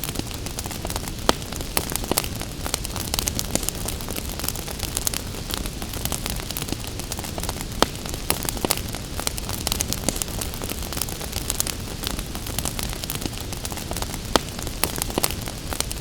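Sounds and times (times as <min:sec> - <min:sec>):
gentle rain hissing: 0:00.0 - 0:16.0
wood fire crackling and popping: 0:00.0 - 0:16.0.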